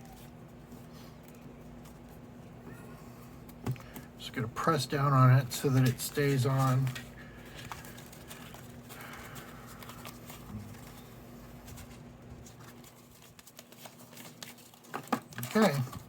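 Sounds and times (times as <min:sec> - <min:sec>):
steady low hum: 0:00.0 - 0:13.8
cardstock taps and rustles: 0:13.3 - 0:16.0.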